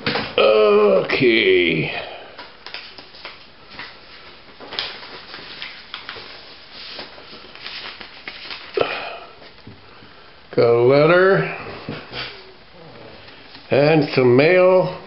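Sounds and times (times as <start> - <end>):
paper rustling: 2.4 - 9.6.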